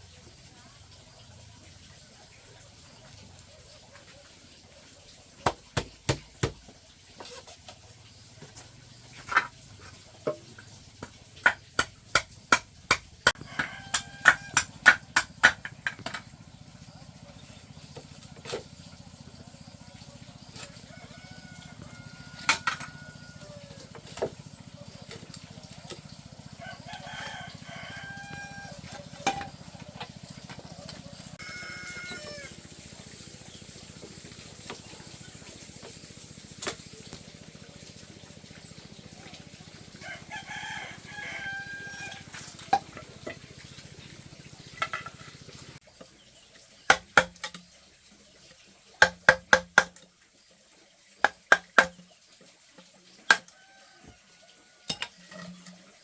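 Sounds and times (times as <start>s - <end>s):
rooster crowing: 13.4s - 14.6s, 20.7s - 23.9s, 26.6s - 29.1s, 31.0s - 32.6s, 40.0s - 42.4s.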